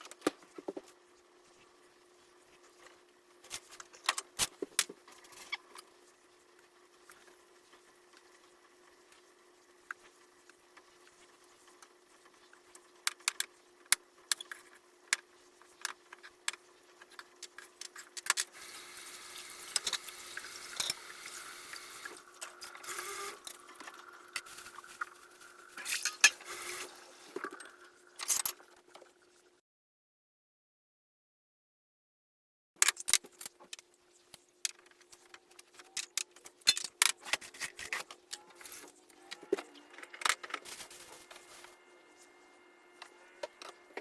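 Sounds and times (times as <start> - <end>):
small objects clicking and clattering: 32.8 - 38.4
faint steady hum: 33.0 - 44.0.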